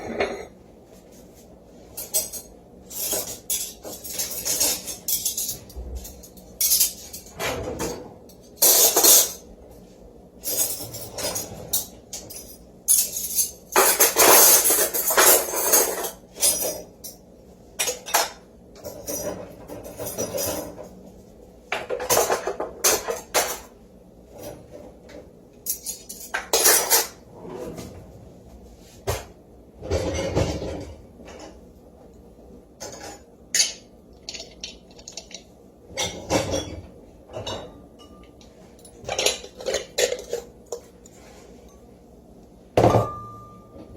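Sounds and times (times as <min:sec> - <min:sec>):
dishes and cutlery clattering: 0:00.0 - 0:00.6, 0:02.0 - 0:09.4, 0:10.5 - 0:16.9, 0:17.8 - 0:21.0, 0:21.7 - 0:23.7, 0:25.7 - 0:28.0, 0:29.1 - 0:31.6, 0:32.8 - 0:41.2.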